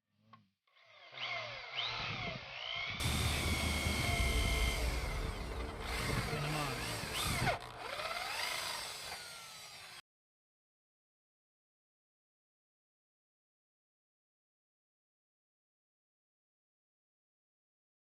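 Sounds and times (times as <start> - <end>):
power tool motor whirring: 0.8 - 10.0.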